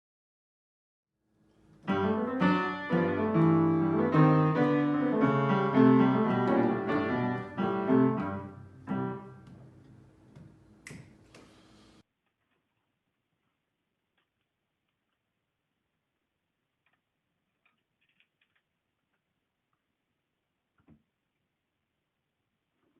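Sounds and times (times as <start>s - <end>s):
solo piano: 1.8s - 10.0s.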